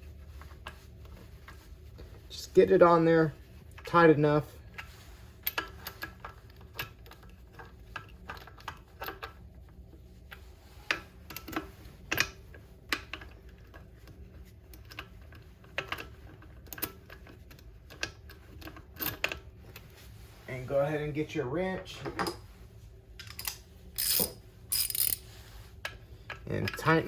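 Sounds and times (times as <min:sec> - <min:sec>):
hand tool clicking on bolts: 0:23.2 - 0:25.2.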